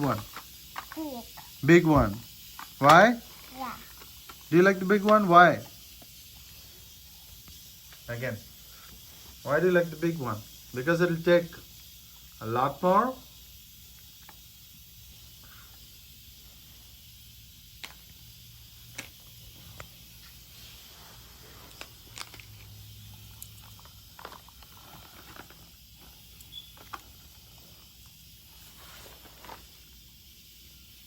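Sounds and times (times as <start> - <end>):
faint hiss: 0.0 - 31.0.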